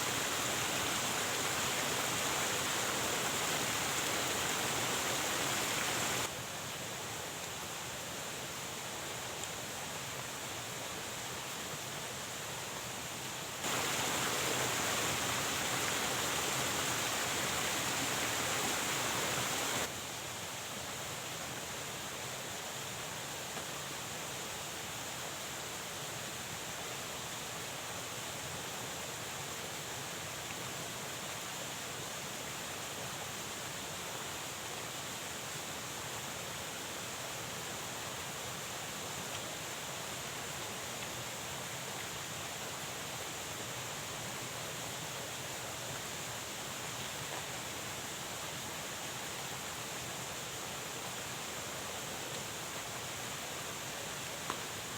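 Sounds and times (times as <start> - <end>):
water rushing: 0.0 - 6.3, 13.6 - 19.9.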